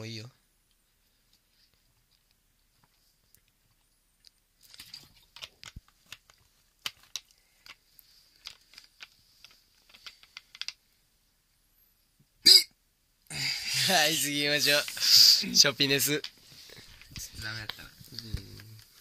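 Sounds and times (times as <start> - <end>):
faint clicks and crackles: 0.6 - 11.0, 15.8 - 19.0
soda fizz hiss: 13.4 - 15.8.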